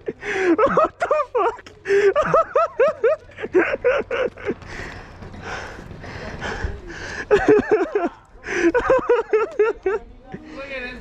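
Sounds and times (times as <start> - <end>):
man laughing: 0.0 - 4.6, 7.2 - 10.0.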